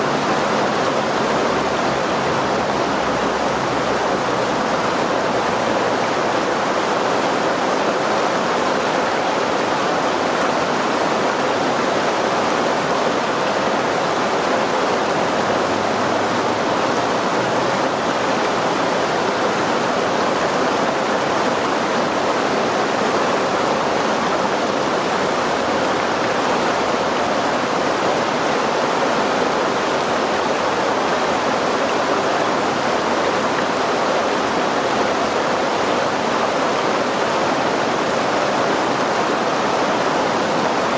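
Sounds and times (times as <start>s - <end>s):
water rushing over rocks: 0.0s - 40.9s.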